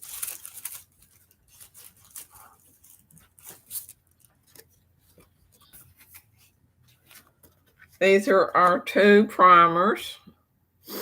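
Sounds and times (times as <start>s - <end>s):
packaging rustling and clicking: 0.0s - 7.8s.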